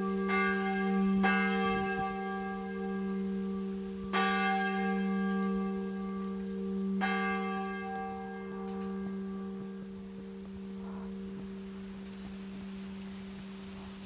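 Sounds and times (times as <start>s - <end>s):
church bell ringing: 0.0s - 13.9s.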